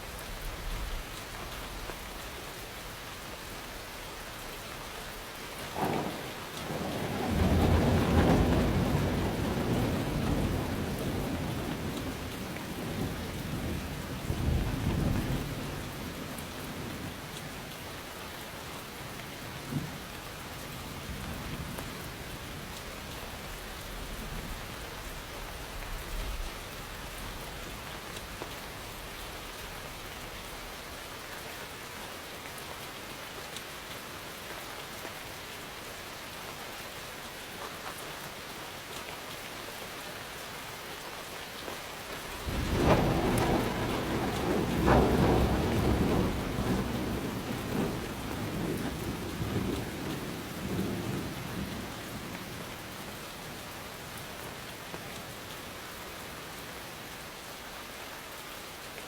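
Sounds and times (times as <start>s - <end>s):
steady rain falling: 0.0s - 59.0s
thunder rumbling: 5.7s - 17.3s, 42.2s - 53.6s
thunder crack: 5.8s - 13.8s, 42.4s - 51.9s.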